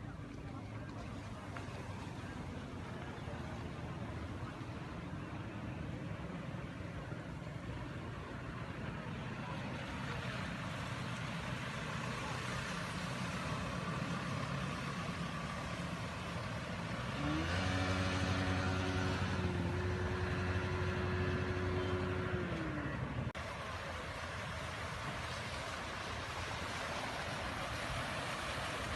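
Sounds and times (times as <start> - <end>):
engine running and revving: 10.2 - 23.6.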